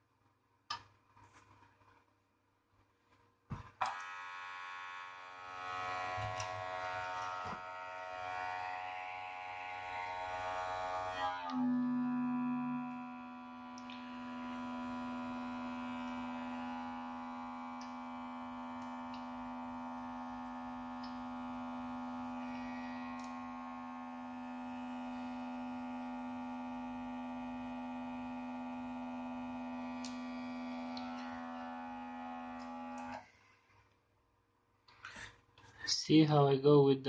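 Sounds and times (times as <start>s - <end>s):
synthesizer drone: 11.3s - 33.2s.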